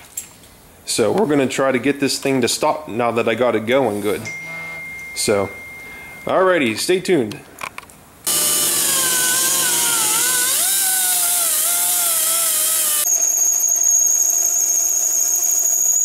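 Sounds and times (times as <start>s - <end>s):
power tool grinding metal: 8.3s - 13.1s.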